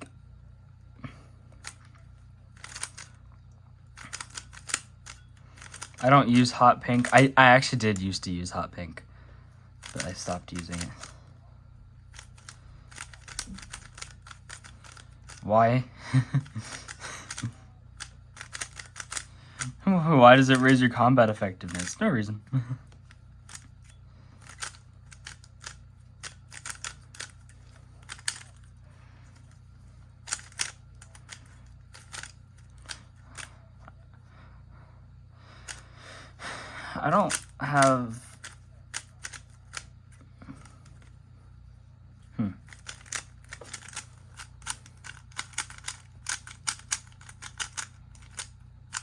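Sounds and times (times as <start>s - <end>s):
rubik's cube plastic clicks: 1.6s - 2.0s, 2.6s - 3.2s, 4.0s - 8.1s, 9.8s - 11.1s, 12.1s - 15.5s, 16.4s - 19.8s, 20.4s - 20.9s, 21.5s - 22.0s, 22.9s - 28.7s, 30.2s - 33.5s, 37.2s - 39.9s, 42.7s - 49.0s.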